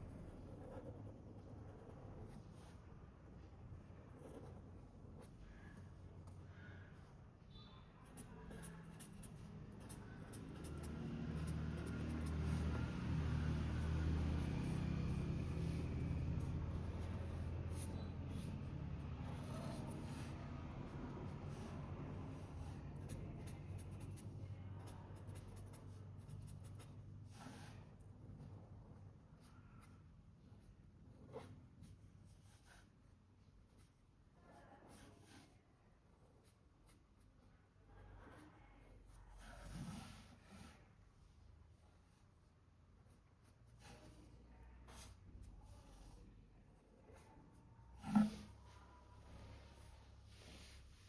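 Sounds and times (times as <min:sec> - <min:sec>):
drawing strokes scratching on paper: 0:00.0 - 0:28.1, 0:29.3 - 0:35.7, 0:38.2 - 0:41.0
low room hum: 0:00.0 - 0:51.0.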